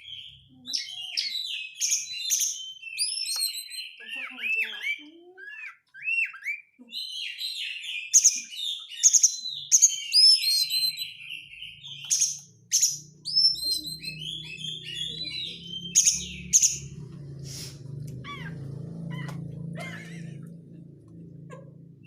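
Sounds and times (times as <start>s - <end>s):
bird singing chirps and whistles: 0.0s - 17.0s
harsh rasping bird chatter: 0.0s - 21.5s
faint low hum: 13.0s - 22.0s.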